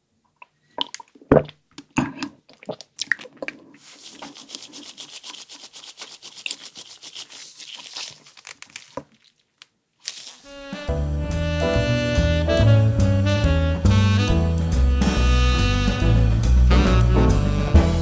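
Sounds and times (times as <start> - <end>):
wet mouth clicks: 0.3 - 7.4
crisp rustling scratch: 3.8 - 10.6.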